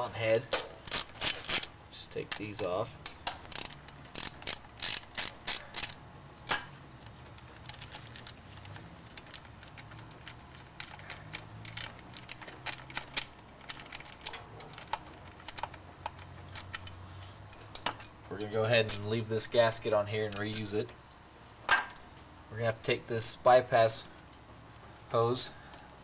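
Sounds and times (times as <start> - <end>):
ratchet wrench clicking: 0.8 - 1.7, 3.4 - 6.6, 20.2 - 20.8.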